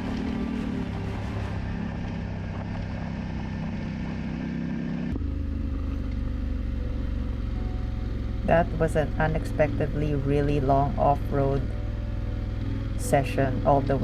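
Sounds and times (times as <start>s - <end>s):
wind and tyre noise on gravel: 0.0s - 4.9s
motorcycle engine running: 0.0s - 14.0s.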